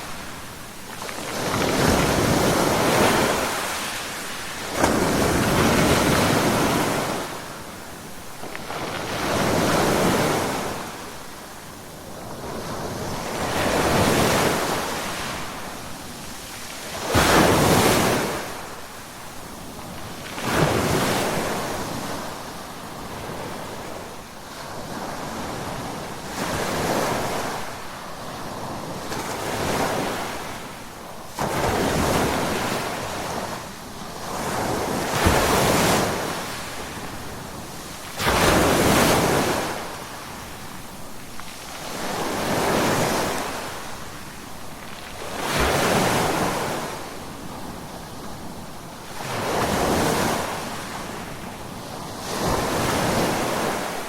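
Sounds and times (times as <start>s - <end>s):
ocean waves breaking: 0.0s - 7.8s.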